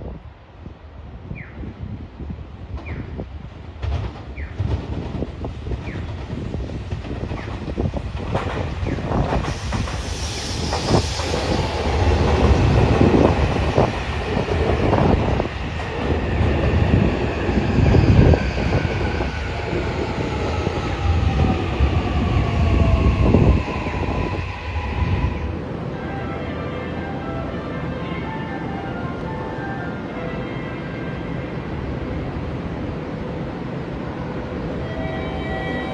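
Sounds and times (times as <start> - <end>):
train rumble: 0.0 - 35.9.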